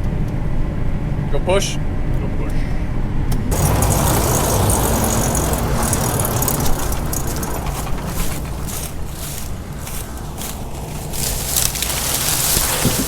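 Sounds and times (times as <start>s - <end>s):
engine rumble: 3.3s - 13.0s
loud rushing machinery noise: 3.5s - 13.0s.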